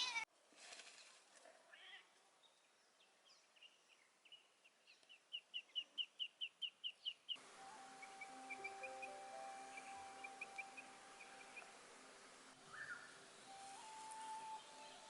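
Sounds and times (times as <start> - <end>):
bird chirping: 2.4 - 11.8, 12.6 - 15.0
background music: 7.4 - 12.2, 13.1 - 15.0.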